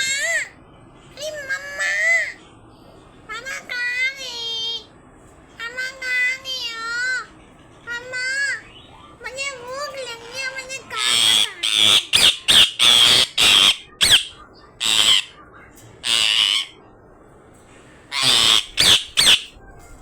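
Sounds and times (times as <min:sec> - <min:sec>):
parrot squawking: 0:10.1 - 0:15.4, 0:16.0 - 0:16.8, 0:18.1 - 0:20.0.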